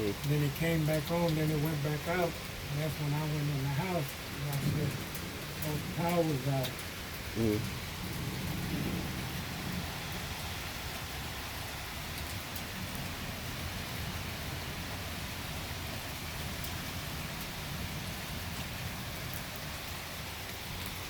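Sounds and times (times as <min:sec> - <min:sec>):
rain falling: 0:00.0 - 0:21.0.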